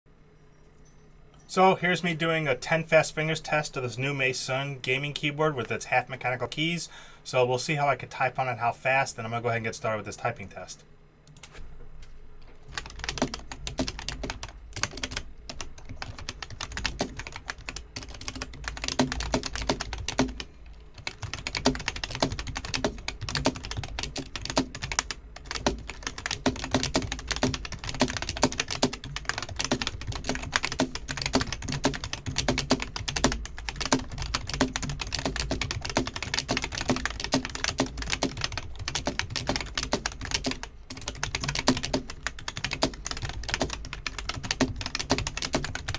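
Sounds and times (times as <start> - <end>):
fast typing on keyboard: 12.7 - 45.9.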